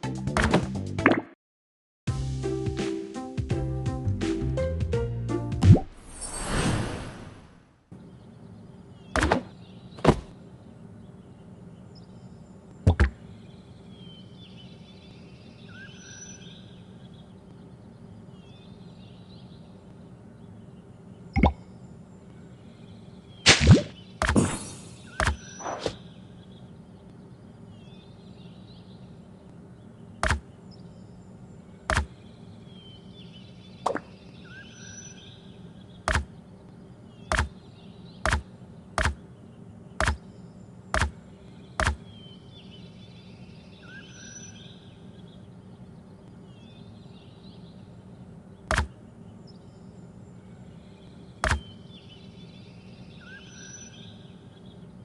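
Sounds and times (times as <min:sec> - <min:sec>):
low steady background: 0:02.4 - 0:55.0
sharp clicks: 0:30.2 - 0:30.4, 0:40.9 - 0:41.2, 0:41.8 - 0:42.0, 0:48.6 - 0:48.9.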